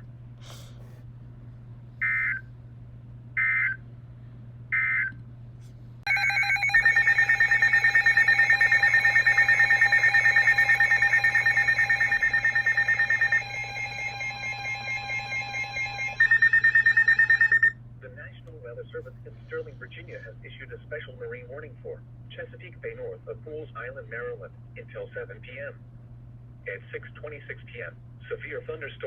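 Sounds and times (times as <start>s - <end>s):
digital data tone bursts: 6.1s - 17.7s
pulsing electronic alert tone: 6.1s - 17.7s.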